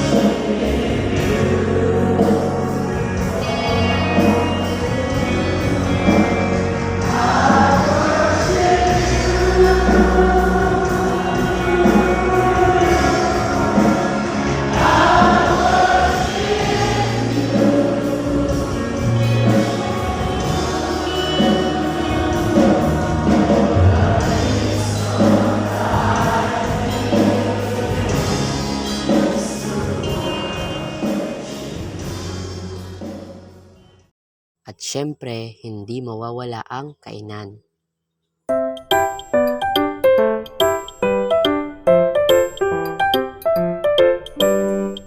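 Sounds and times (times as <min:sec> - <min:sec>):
choir singing: 0:00.0 - 0:33.2
bass accompaniment: 0:00.0 - 0:33.8.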